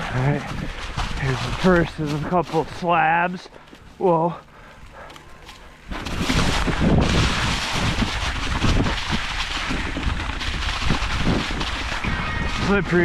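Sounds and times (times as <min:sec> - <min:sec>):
bike tyres thudding: 0:00.0 - 0:13.0
wind rushing over microphone: 0:05.9 - 0:13.0.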